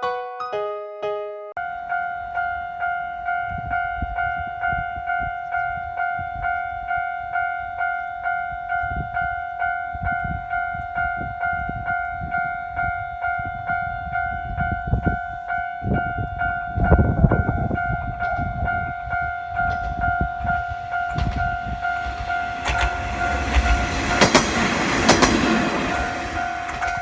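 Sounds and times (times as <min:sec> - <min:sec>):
level-crossing warning bell ringing: 0:01.6 - 0:27.0
diesel railcar rumbling: 0:01.7 - 0:27.0
train wheel clatter: 0:16.8 - 0:27.0.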